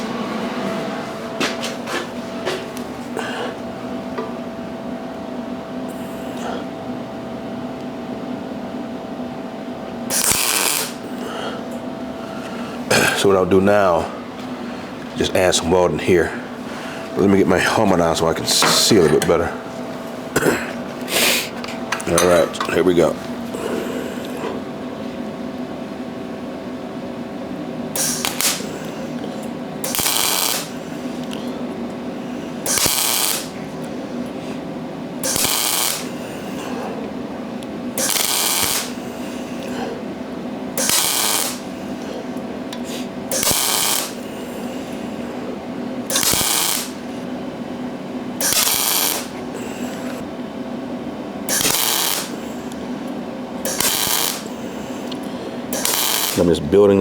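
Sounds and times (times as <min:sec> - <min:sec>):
steady hum: 0:00.0 - 0:57.0
mig welder bursts: 0:10.1 - 0:11.2, 0:27.9 - 0:29.2, 0:29.8 - 0:31.3, 0:32.5 - 0:34.0, 0:35.2 - 0:36.9, 0:38.0 - 0:39.9, 0:40.7 - 0:42.1, 0:42.8 - 0:45.3, 0:46.0 - 0:47.1, 0:48.4 - 0:50.2, 0:51.4 - 0:52.9, 0:53.6 - 0:56.8.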